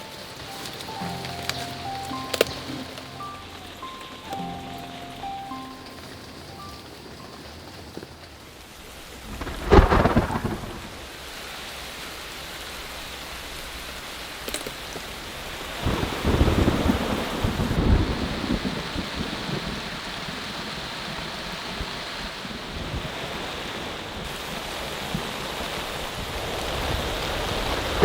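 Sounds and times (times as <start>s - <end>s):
steady rain: 0.0s - 28.0s
rolling thunder rumble: 1.8s - 14.0s, 15.2s - 28.0s
thunder clap: 3.7s - 12.9s, 15.4s - 21.9s, 26.1s - 28.0s.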